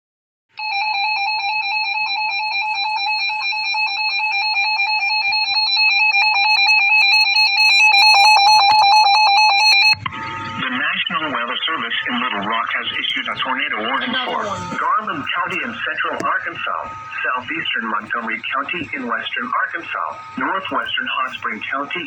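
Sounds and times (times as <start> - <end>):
two-pitch electronic alert tone: 6.0 - 19.2.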